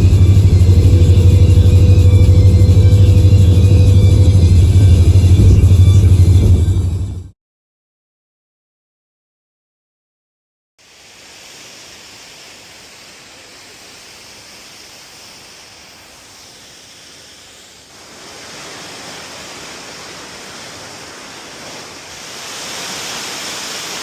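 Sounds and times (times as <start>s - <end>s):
waterfall roaring: 10.8s - 24.0s.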